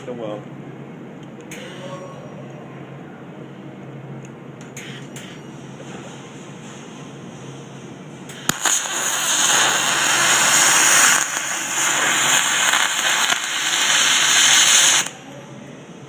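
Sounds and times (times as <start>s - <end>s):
welder arc hissing: 8.3s - 15.2s.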